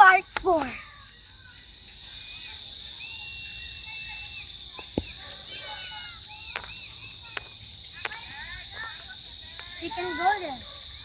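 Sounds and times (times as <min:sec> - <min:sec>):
birds chirping and whistling: 0:00.0 - 0:08.0
steady high-pitched hiss: 0:00.0 - 0:11.0.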